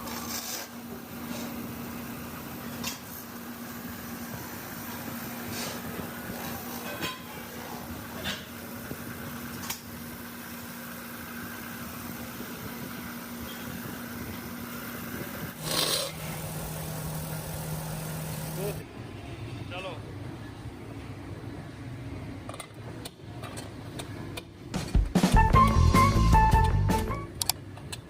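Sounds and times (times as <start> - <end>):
factory machinery humming: 7.5 - 19.2
loud hiss-like burst: 15.6 - 18.8.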